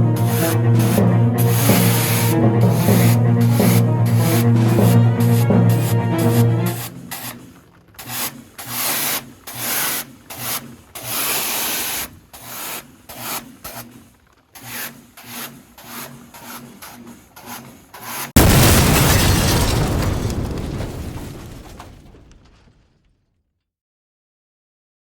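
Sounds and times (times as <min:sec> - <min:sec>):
scrubbing strokes on a surface: 0:00.0 - 0:18.4.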